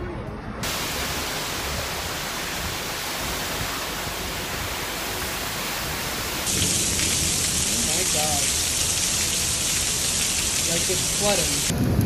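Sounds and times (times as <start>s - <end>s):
heavy rain pouring: 0.6s - 12.0s.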